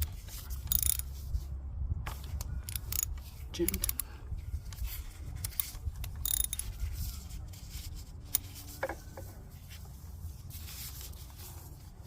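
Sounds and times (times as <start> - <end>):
ratchet wrench clicking: 0.0 - 1.2, 2.2 - 6.8.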